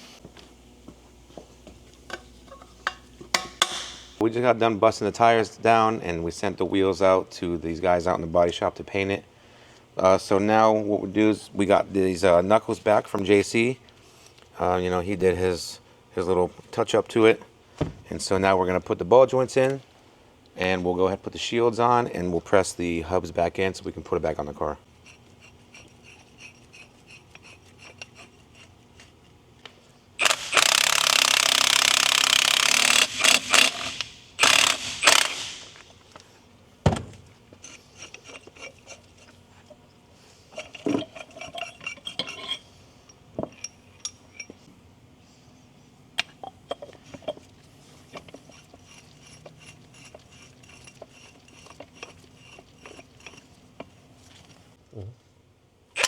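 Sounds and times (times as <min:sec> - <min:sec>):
hand tools clinking and scraping: 0:25.0 - 0:29.2, 0:37.5 - 0:44.7, 0:46.4 - 0:54.6
loud hiss: 0:32.3 - 0:35.8.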